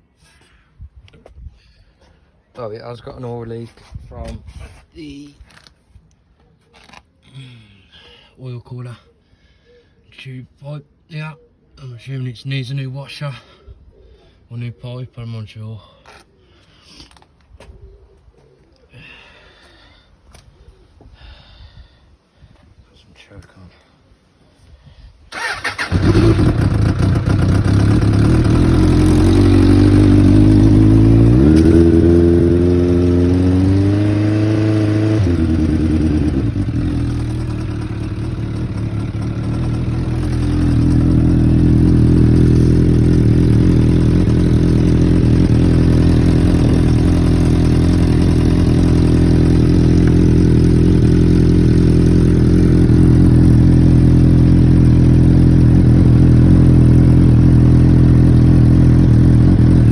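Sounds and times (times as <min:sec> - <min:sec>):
motorcycle engine starting and revving: 0:25.3 - 0:59.9.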